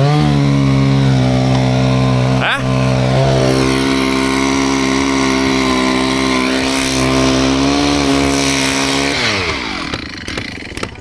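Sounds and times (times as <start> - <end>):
chainsaw cutting log: 0.0 - 11.0.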